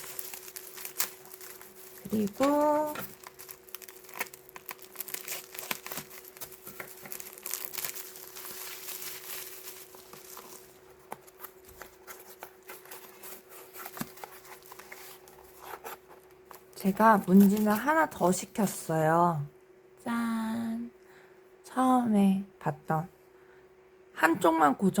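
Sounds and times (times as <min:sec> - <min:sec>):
packaging tearing: 0:00.0 - 0:17.8
packaging crinkling and rustling: 0:00.0 - 0:18.8.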